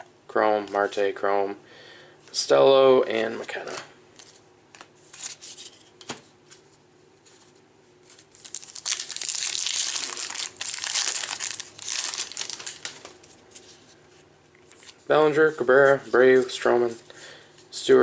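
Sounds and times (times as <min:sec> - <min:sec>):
foil wrapper tearing and crinkling: 0:08.4 - 0:13.2.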